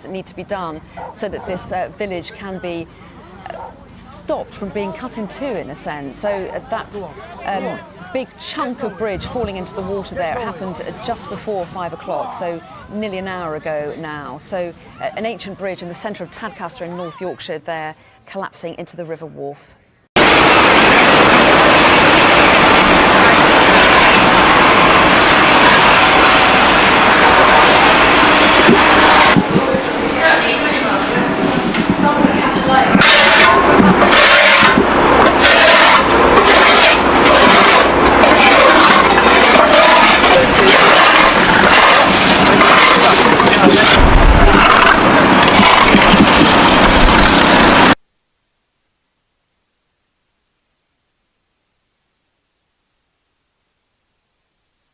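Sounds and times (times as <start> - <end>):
wind buffeting microphone: 7.7 - 14.9, 20.8 - 48.0.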